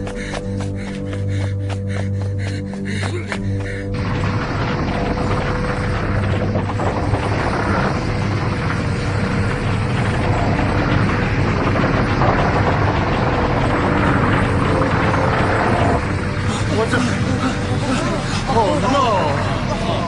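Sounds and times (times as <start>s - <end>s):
large fire rumbling: 3.8s - 20.0s.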